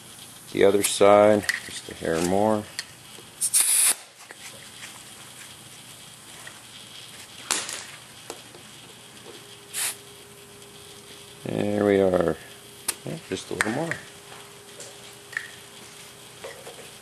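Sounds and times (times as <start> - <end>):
compressed air hisses: 3.4 - 4.2, 9.6 - 10.2.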